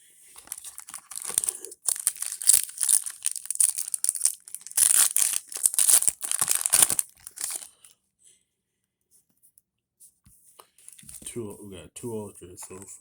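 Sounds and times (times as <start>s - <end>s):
foil wrapper crinkling: 0.4s - 7.8s.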